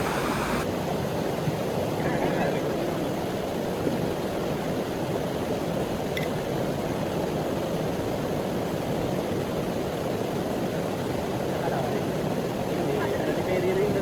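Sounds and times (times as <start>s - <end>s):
steady rushing noise: 0.0s - 0.7s.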